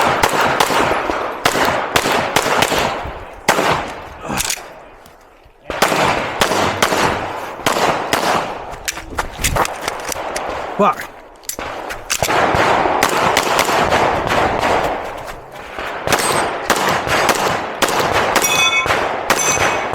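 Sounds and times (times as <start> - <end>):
pistol firing rapid shots: 0.0 - 4.0, 5.7 - 8.6, 11.6 - 15.0, 15.8 - 19.9.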